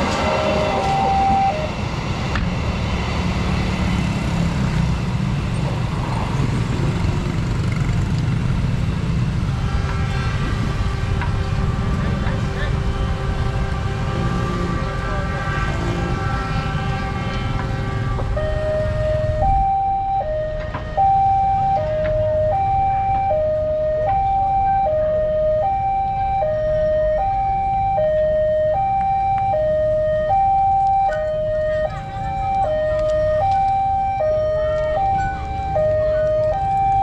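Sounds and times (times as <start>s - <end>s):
two-tone level crossing siren: 0.0s - 1.9s, 14.1s - 37.0s
loud rumble with steady tones: 0.0s - 37.0s.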